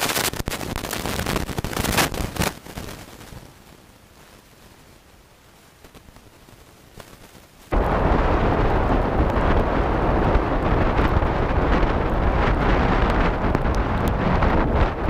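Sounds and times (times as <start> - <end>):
strong wind buffeting microphone: 7.7 - 15.0.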